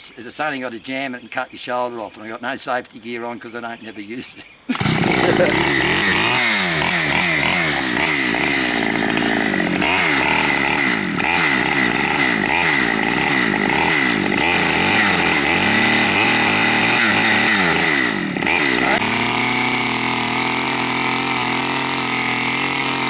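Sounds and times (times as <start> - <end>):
chainsaw cutting through log: 4.7 - 23.0.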